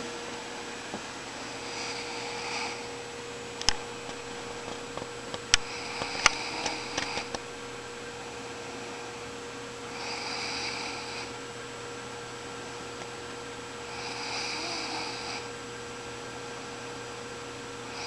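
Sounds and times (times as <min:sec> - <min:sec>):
woman snoring: 0:01.5 - 0:02.9, 0:05.4 - 0:07.7, 0:09.9 - 0:11.4, 0:13.8 - 0:15.5
sharp clicks: 0:03.6 - 0:07.6.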